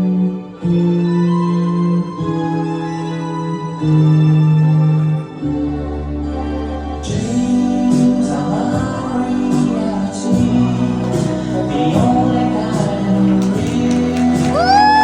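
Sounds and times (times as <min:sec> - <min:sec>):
song with singing and light beat: 0:06.1 - 0:15.0.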